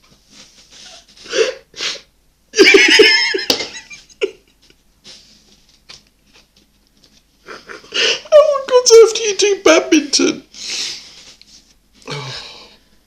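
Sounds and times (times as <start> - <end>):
people laughing: 2.6 - 4.4, 7.5 - 8.1.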